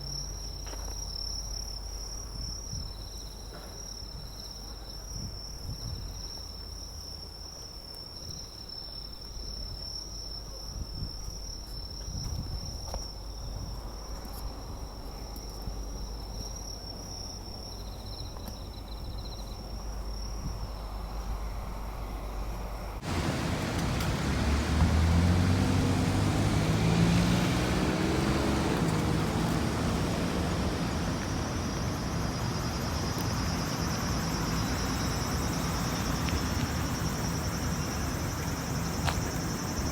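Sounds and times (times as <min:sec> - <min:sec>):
insects trilling: 0:11.2 - 0:39.9
low wind rumble: 0:19.9 - 0:39.9
vehicle engine and road noise: 0:21.4 - 0:39.9.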